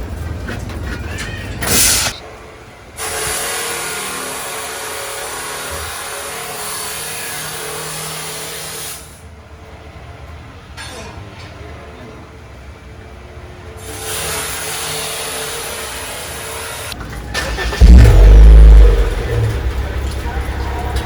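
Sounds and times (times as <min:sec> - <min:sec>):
power tool running: 0:17.8 - 0:19.8.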